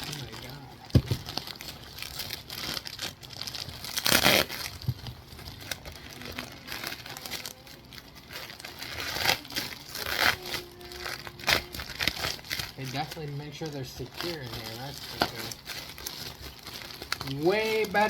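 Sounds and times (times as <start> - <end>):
plastic wrapping crinkling and ripping: 0.0 - 18.0.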